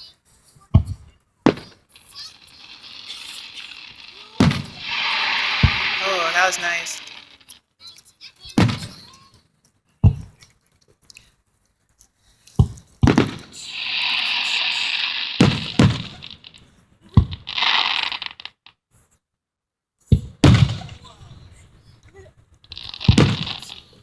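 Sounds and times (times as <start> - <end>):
fireworks booming: 1.5 - 7.5, 13.1 - 16.6, 22.8 - 24.0
fireworks hissing and crackling: 1.5 - 7.7, 12.6 - 18.6, 22.6 - 24.0.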